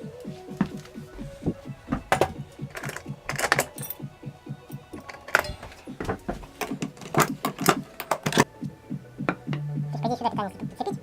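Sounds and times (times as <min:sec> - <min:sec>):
background music: 0:00.0 - 0:11.0
tools clinking on metal parts: 0:01.9 - 0:08.5.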